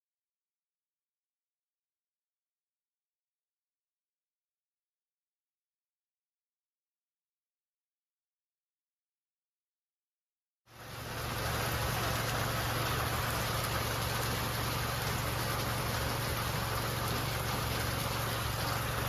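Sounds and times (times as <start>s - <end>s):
motor running with hum and hiss: 10.7s - 19.0s.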